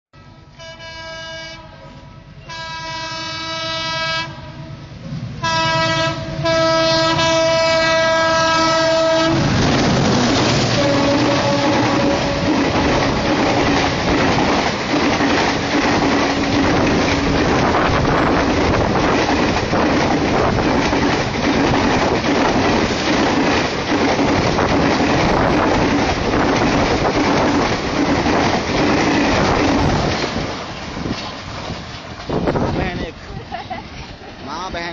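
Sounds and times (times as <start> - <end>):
passenger train passing at speed: 0.2 - 34.9
wheel-and-rail rushing noise: 8.5 - 34.9.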